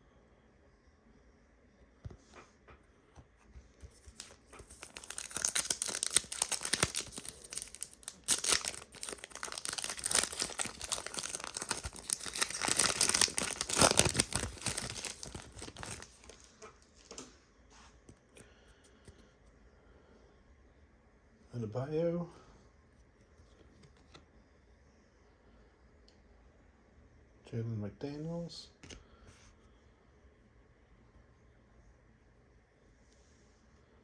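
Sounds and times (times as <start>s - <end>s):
wrapper tearing and crinkling: 3.8s - 16.5s.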